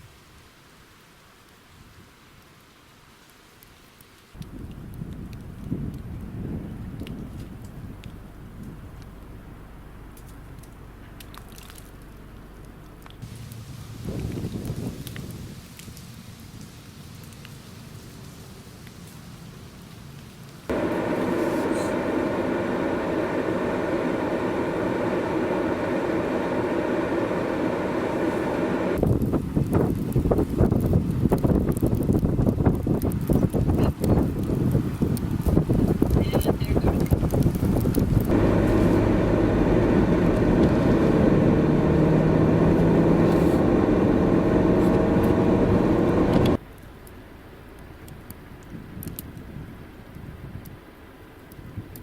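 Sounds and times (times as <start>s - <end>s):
road and tyre noise: 4.4s - 51.7s
vehicle engine hum: 20.7s - 29.3s, 35.8s - 46.7s
steady mechanical running noise: 20.7s - 29.4s, 37.0s - 46.6s.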